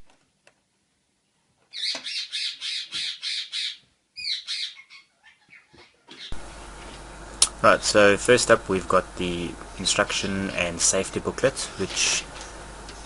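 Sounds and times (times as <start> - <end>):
bird squawking: 1.7 - 6.4.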